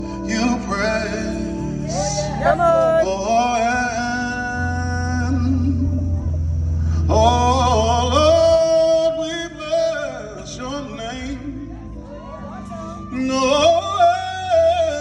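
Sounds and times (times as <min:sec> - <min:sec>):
person singing gospel: 0:00.0 - 0:15.0.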